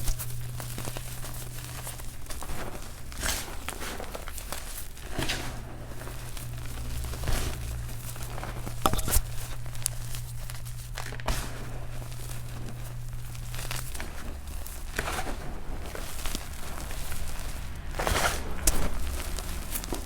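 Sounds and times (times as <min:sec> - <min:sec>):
chalk crumbling by hand: 0:00.0 - 0:20.0
low steady hum: 0:00.0 - 0:20.0.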